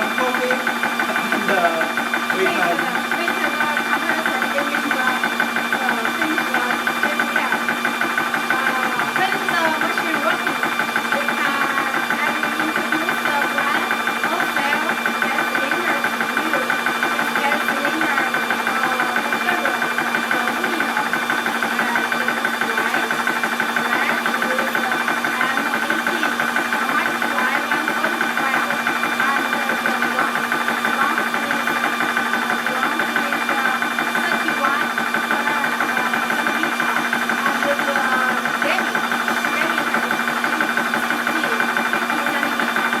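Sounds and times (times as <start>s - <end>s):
air compressor running: 0.0s - 43.0s.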